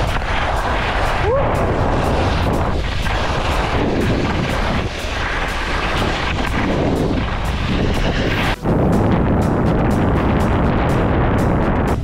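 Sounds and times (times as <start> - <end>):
skis scraping icy snow: 0.0 - 8.6
wind buffeting microphone: 0.0 - 12.0.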